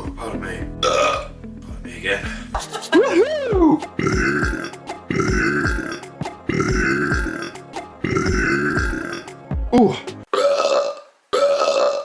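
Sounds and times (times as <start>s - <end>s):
man belching loudly: 0.8s - 1.4s, 3.0s - 12.0s.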